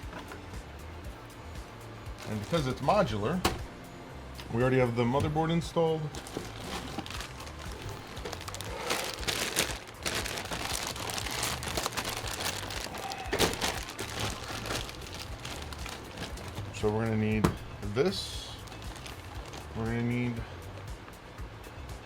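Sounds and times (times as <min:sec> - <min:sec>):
plastic packaging crinkling: 0:02.2 - 0:03.1, 0:06.1 - 0:16.9, 0:18.5 - 0:19.8.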